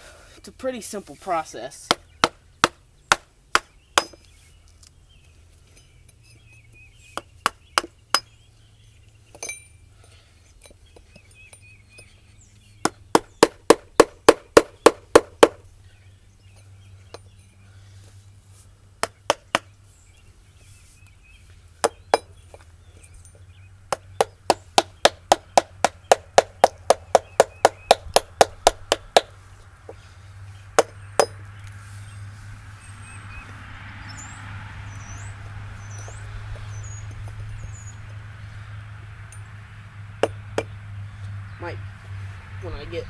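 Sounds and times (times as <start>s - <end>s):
mallet striking chisel into wood: 1.9s - 4.3s, 12.8s - 15.6s, 19.0s - 19.7s, 21.8s - 22.3s, 23.9s - 29.3s, 30.8s - 31.4s, 40.2s - 40.7s.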